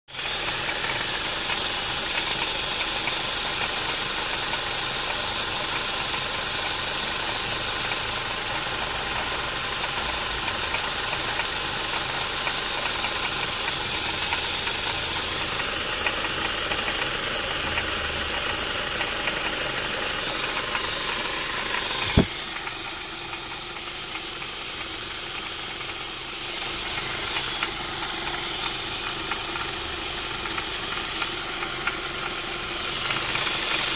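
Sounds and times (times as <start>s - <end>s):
car engine idling: 0.2s - 33.9s
rattle from engine pulleys: 0.2s - 33.9s
sharp knock: 22.0s - 22.4s.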